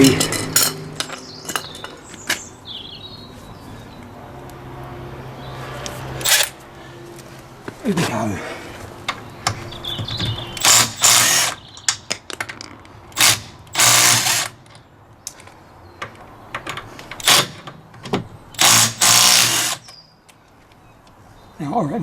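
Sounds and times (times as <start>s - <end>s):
impact wrench hammering: 10.6s - 11.6s, 13.2s - 14.6s, 18.6s - 19.8s.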